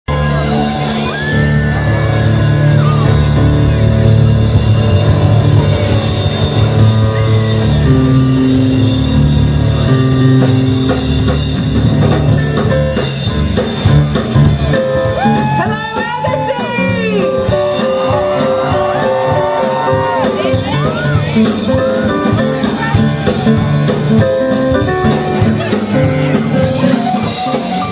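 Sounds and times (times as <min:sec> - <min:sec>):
rock music with guitar and drums: 0:00.1 - 0:27.9.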